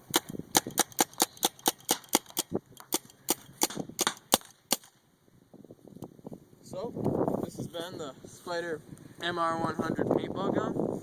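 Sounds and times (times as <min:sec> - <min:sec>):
paintball marker firing: 0:00.0 - 0:05.0.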